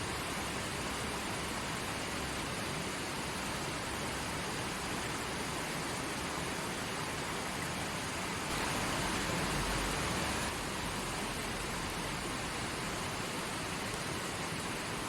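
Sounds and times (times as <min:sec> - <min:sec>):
creek water rushing: 0:00.0 - 0:15.0.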